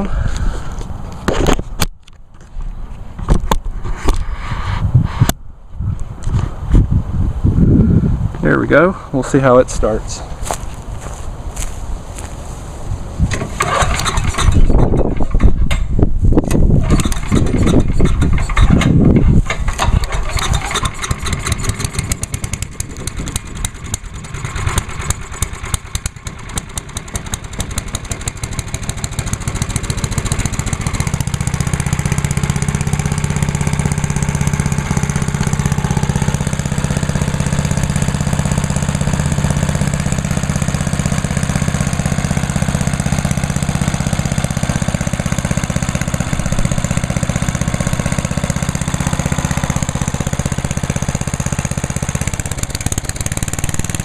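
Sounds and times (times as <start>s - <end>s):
small engine running: 13.4s - 15.6s, 16.5s - 54.0s.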